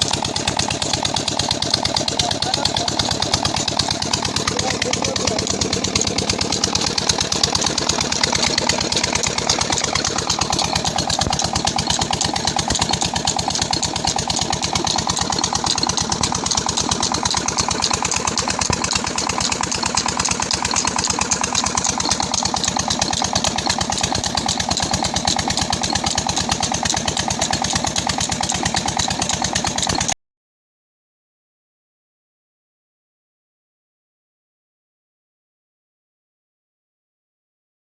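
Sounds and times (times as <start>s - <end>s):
diesel engine running: 0.0s - 30.2s.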